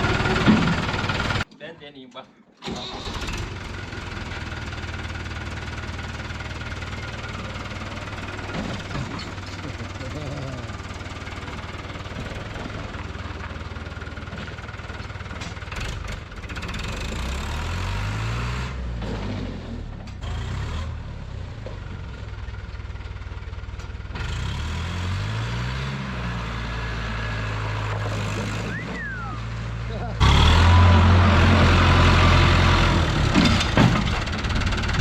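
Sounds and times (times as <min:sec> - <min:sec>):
tractor diesel engine revving: 0:00.0 - 0:01.5, 0:02.6 - 0:35.0.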